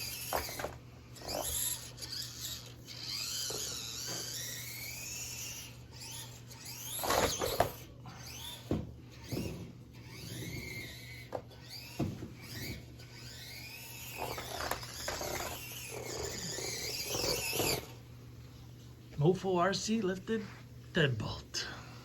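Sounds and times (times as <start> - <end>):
toy truck motor whining: 0.0 - 18.0.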